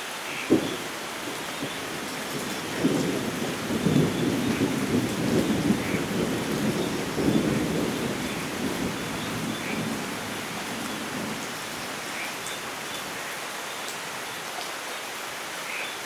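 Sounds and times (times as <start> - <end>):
rain hissing: 0.0 - 15.8
rolling thunder: 0.5 - 13.2.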